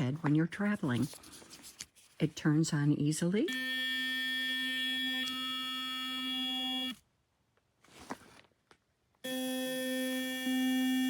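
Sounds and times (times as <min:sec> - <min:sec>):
faint handling sounds: 0:00.0 - 0:02.5, 0:07.5 - 0:08.9
electric toothbrush buzzing: 0:09.3 - 0:11.0.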